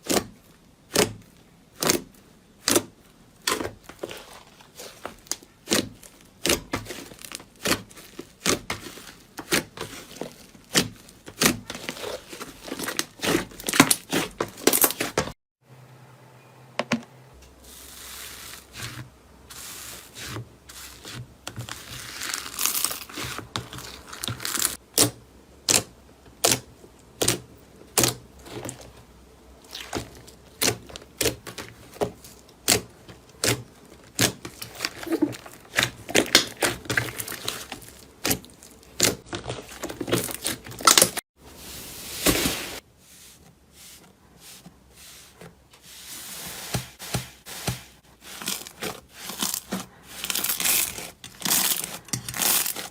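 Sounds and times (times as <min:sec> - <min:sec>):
crinkly rustling: 0:03.7 - 0:15.4, 0:17.6 - 0:24.8, 0:29.7 - 0:52.9.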